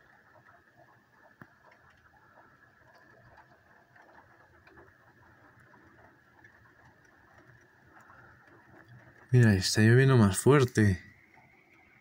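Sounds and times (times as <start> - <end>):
faint rain drops ticking: 0.0 - 12.0.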